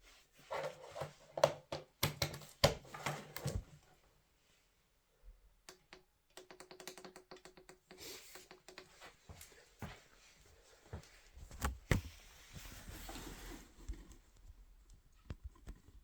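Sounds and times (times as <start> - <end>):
knocks and taps: 5.7 - 9.0.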